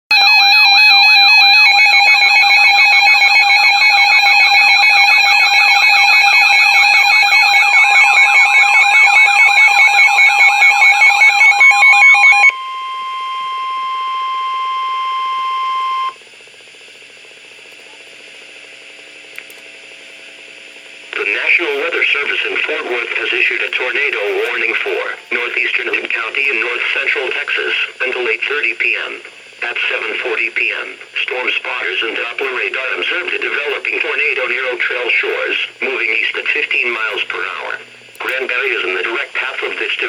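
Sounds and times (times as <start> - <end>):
loud steady alarm tone: 0.1 - 16.2.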